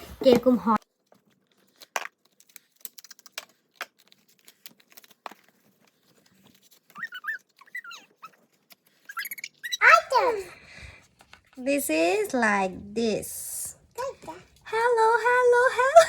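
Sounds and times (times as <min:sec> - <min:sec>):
packaging crinkling and tearing: 0:00.8 - 0:09.2
faint high wavering squeaks: 0:07.0 - 0:08.4, 0:09.0 - 0:10.1.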